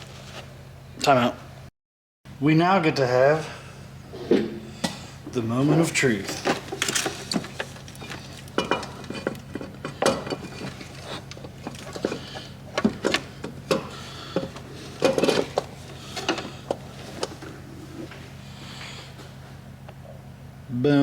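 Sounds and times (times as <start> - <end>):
steady low hum: 2.3 - 21.0
metal parts clinking and knocking: 6.3 - 12.2.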